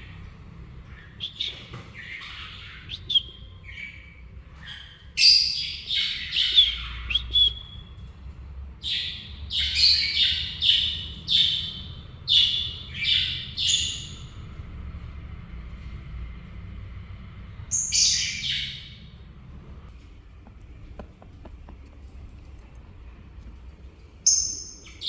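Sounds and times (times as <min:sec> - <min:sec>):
cockatiel chirping and calling: 0:00.8 - 0:07.9, 0:08.8 - 0:14.3, 0:17.7 - 0:19.0.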